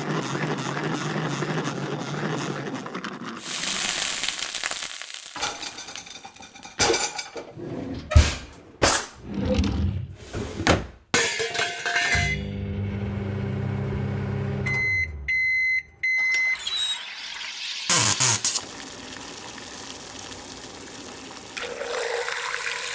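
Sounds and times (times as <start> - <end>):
high hiss burst: 3.4 - 5.5
sizzling hiss: 3.4 - 6.6
dishes and utensils clattering: 5.4 - 9.8, 10.5 - 12.4.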